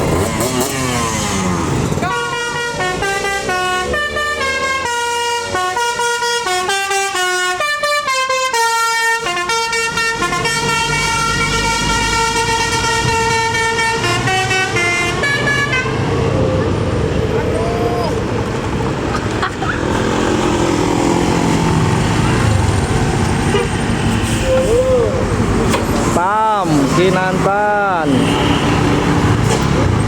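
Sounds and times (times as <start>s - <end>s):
multi-tone bus horn tune: 0.1s - 16.4s, 23.4s - 25.2s, 27.9s - 29.4s
bus engine running: 9.4s - 30.0s.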